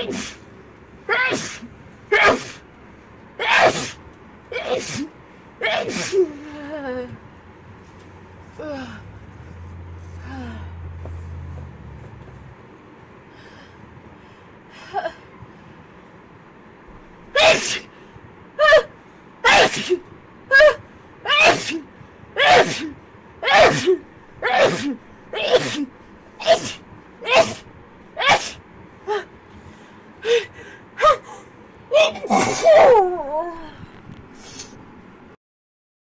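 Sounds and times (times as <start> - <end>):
girl sneezing: 0.0 - 0.4, 1.1 - 2.6, 3.4 - 4.0, 4.6 - 6.4, 17.4 - 17.9, 18.6 - 28.6, 31.9 - 33.0.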